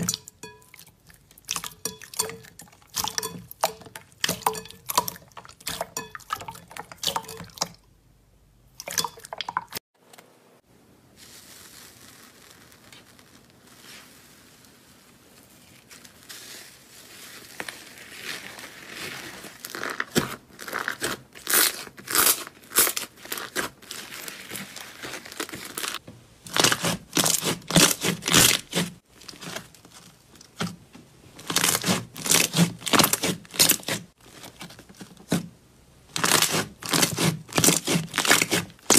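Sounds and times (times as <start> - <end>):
slime crackling and popping: 11.2 - 14.7, 36.1 - 38.9.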